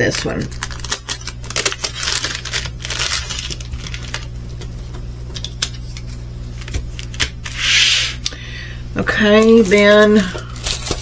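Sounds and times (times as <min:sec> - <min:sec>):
packaging rustling: 0:00.1 - 0:04.4, 0:09.3 - 0:11.0.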